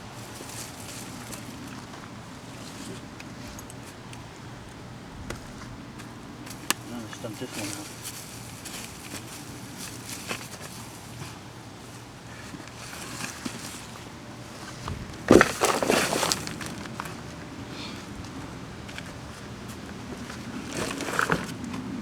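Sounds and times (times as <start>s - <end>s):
hands scraping and rustling soil: 0.0s - 4.2s, 5.3s - 22.0s
soil and potatoes spilling: 15.2s - 17.0s.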